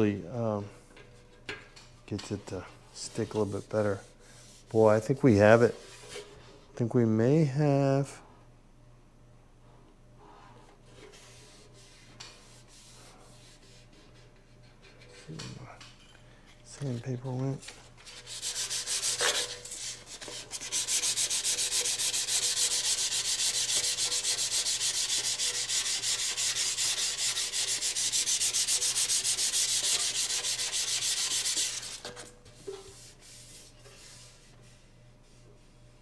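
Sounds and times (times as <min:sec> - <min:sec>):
sandpaper rubbing on steel: 0:18.1 - 0:32.1.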